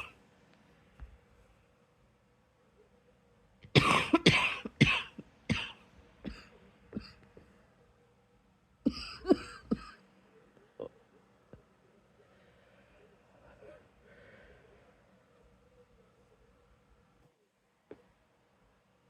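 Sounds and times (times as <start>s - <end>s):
person coughing: 3.7s - 7.2s, 8.9s - 10.0s.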